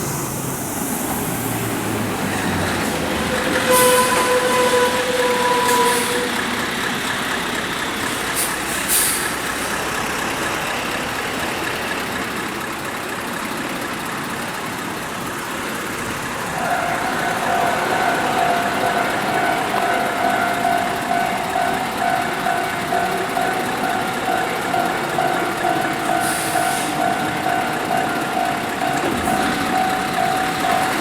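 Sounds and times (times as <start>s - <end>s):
air brake hisses: 0.0s - 6.4s, 8.1s - 9.8s, 26.0s - 27.2s
truck engine and tyres rumbling: 0.0s - 31.0s.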